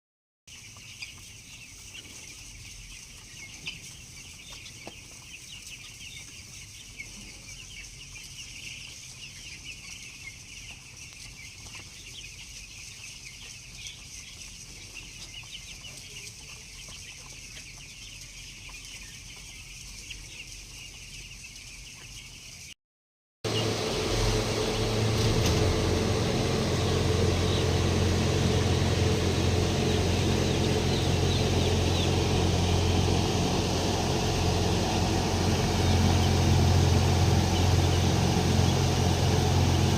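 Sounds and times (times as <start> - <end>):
chicks peeping: 0.5 - 22.8, 23.5 - 39.9
low machine hum: 23.5 - 39.9.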